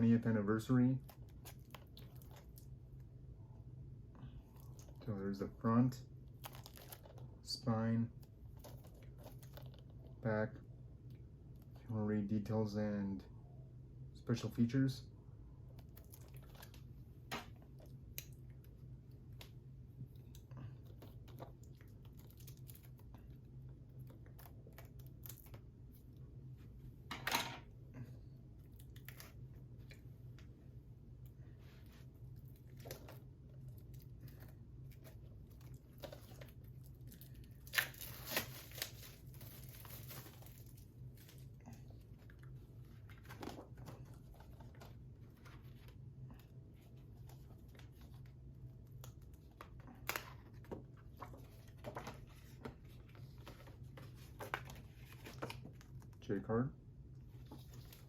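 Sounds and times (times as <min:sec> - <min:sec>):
low steady hum: 0:00.0 - 0:58.0
plastic packaging crinkling: 0:06.2 - 0:07.4, 0:32.6 - 0:41.6
plastic tearing: 0:06.4 - 0:07.3, 0:33.9 - 0:41.3
plastic ripping: 0:33.9 - 0:41.3.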